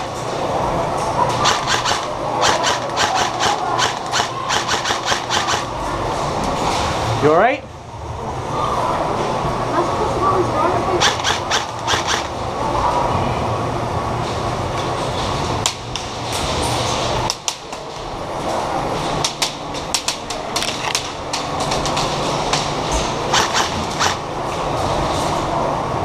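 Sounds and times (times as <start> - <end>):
airsoft guns firing: 1.4 - 5.8, 11.0 - 12.4, 23.3 - 24.2.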